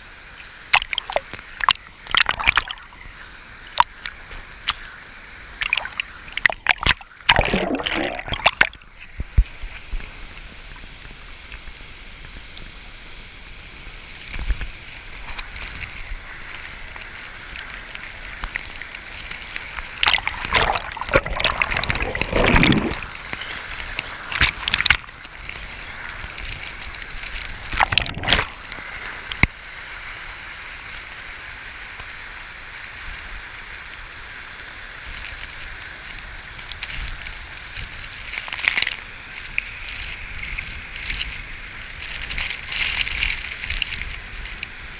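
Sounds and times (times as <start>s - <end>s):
water splashing: 0.4s - 10.0s, 14.2s - 29.4s
waterfall rushing: 12.7s - 32.8s.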